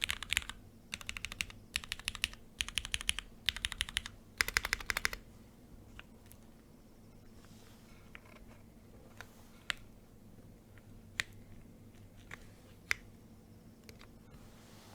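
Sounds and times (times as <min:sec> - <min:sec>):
mechanical keyboard keystrokes: 0:00.0 - 0:05.2.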